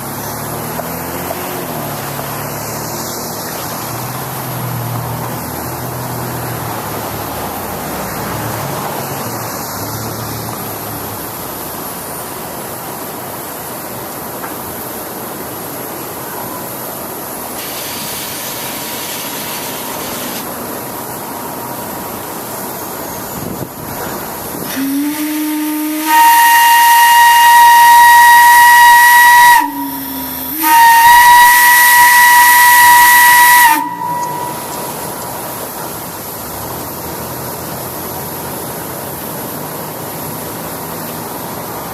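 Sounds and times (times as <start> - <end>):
whistle blasts: 24.7 - 35.3.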